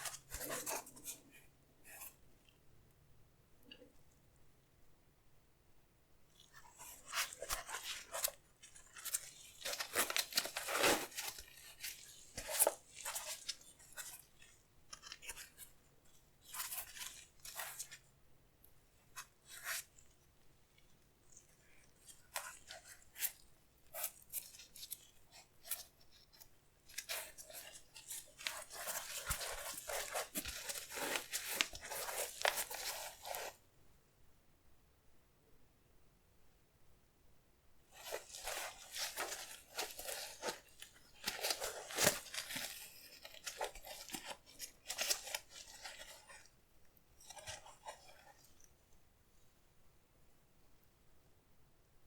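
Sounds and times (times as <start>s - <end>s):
packaging crinkling and tearing: 9.0s - 13.6s, 27.0s - 33.5s, 38.0s - 46.4s.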